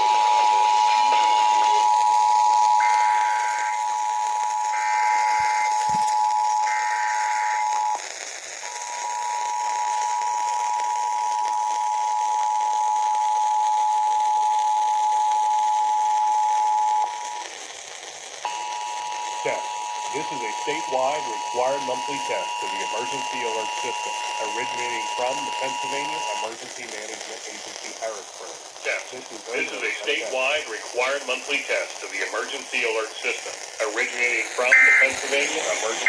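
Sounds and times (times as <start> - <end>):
data-burst squawks: 4.7 - 8.0, 34.5 - 36.0
two-tone attention signal: 18.5 - 26.5, 34.6 - 35.6.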